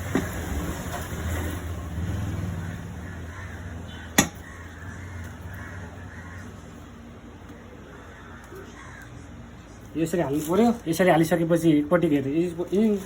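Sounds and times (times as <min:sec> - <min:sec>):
sharp knock on engine parts: 0:04.2 - 0:04.4.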